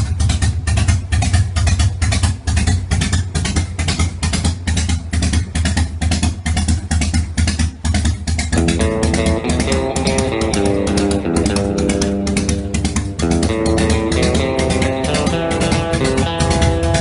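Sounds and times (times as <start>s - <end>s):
rock music with drums: 0.0s - 17.0s
melodic guitar line: 8.6s - 17.0s.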